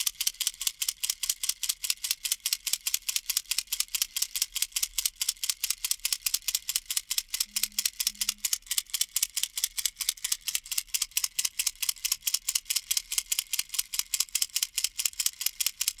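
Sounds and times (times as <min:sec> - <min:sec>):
plastic baby rattle shaking: 0:06.4 - 0:11.2.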